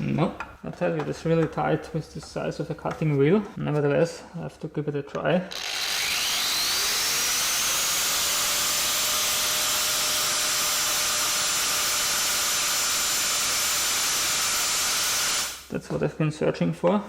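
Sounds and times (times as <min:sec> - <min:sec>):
angle grinder cutting metal: 0:05.5 - 0:15.7.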